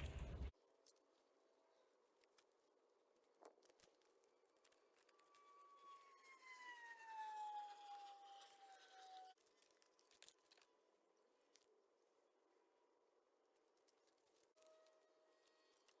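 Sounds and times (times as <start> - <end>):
faint siren wail: 5.1 - 9.4.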